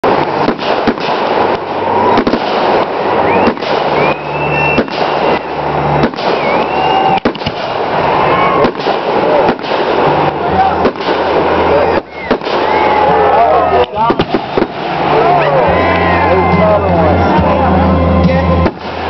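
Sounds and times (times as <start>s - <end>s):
fireworks bangs and crackling: 0.0s - 19.0s
whistling firework shells: 0.1s - 15.1s.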